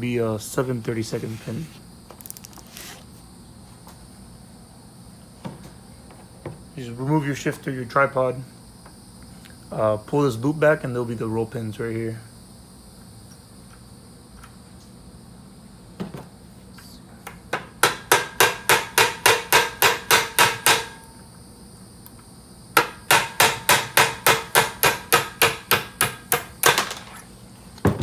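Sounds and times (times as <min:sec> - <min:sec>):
hammer striking metal punch: 0:17.5 - 0:21.1, 0:22.8 - 0:26.9.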